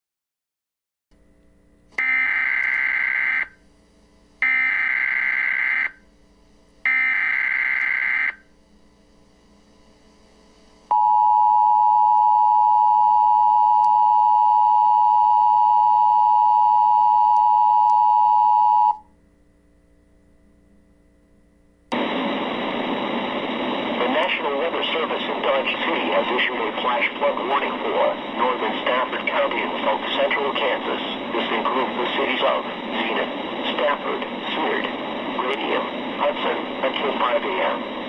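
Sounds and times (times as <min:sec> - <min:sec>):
two-tone alert signal: 0:02.0 - 0:03.5, 0:04.4 - 0:05.9, 0:06.9 - 0:08.4
short data bursts: 0:04.4 - 0:06.0, 0:06.9 - 0:08.4.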